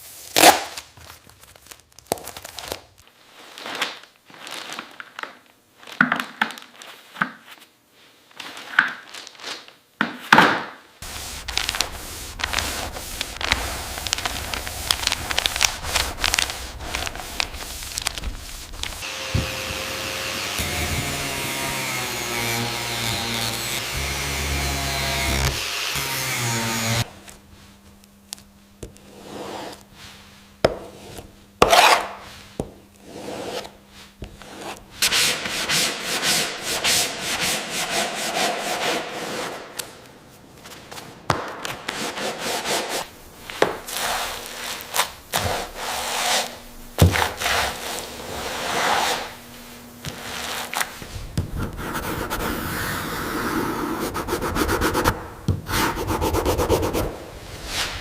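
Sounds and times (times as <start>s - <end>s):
sanding wood: 11.0s - 27.1s, 34.5s - 39.6s, 47.3s - 49.4s, 51.6s - 57.2s.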